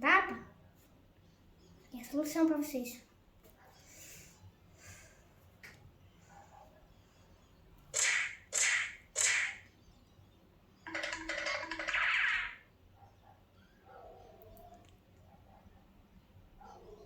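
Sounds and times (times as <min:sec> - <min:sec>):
slap sound effect: 0:08.0 - 0:09.6.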